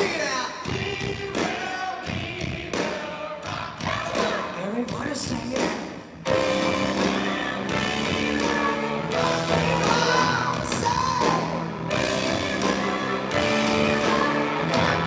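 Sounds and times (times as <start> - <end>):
person singing: 3.9 - 15.0
rock band playing: 5.5 - 15.0.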